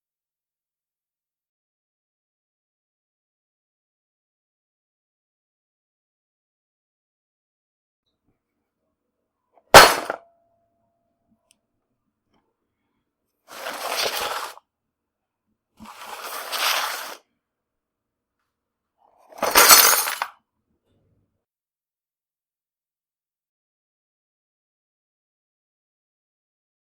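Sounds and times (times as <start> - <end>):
toolbox crashing with clatter: 9.8 - 10.2, 13.5 - 14.6, 15.9 - 17.2, 19.4 - 20.3.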